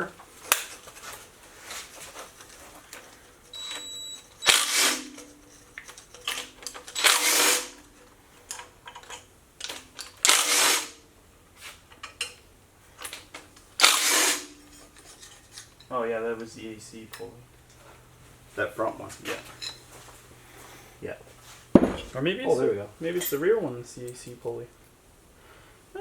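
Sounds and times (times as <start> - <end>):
tool clicks and clanks: 0.2 - 11.0, 11.6 - 12.4, 13.0 - 17.8
power tool rasping: 4.4 - 7.9, 10.2 - 11.0, 13.8 - 15.6.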